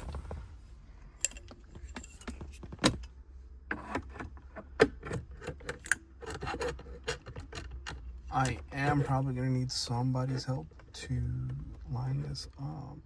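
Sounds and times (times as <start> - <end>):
low steady hum: 0.0 - 13.0
metal parts clinking and rattling: 1.2 - 2.6.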